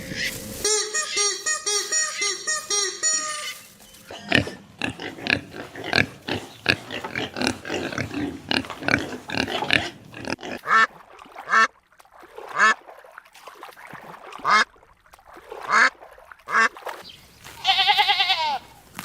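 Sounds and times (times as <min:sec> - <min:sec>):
animal calls: 0:00.0 - 0:10.9.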